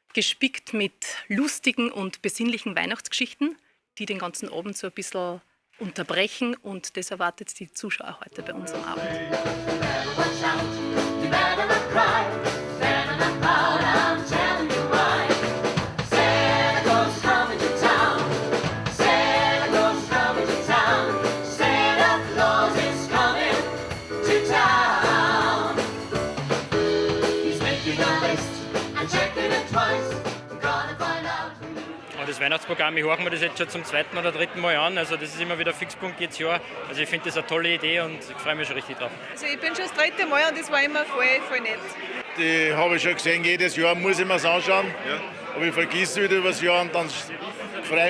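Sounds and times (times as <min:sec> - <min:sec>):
gospel singing with instruments: 0:08.5 - 0:32.0.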